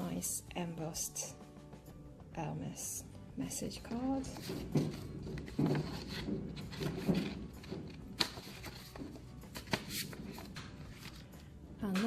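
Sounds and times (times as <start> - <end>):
soft background music: 0.0 - 12.0
packaging rustling: 4.3 - 11.3.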